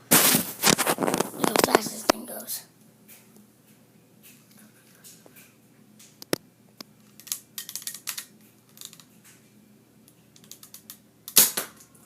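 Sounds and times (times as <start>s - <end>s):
toy gun mechanism clicking: 7.2s - 9.1s, 10.4s - 11.8s
loud plastic snap: 10.6s - 11.9s.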